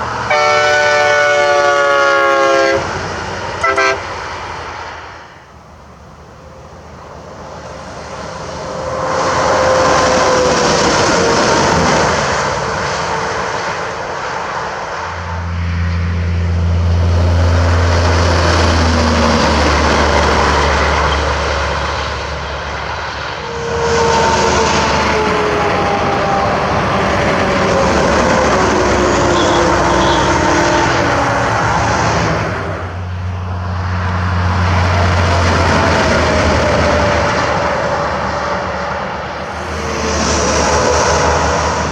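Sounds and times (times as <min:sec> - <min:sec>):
trucks passing: 0:00.0 - 0:41.9
deep engine drone: 0:15.0 - 0:41.9.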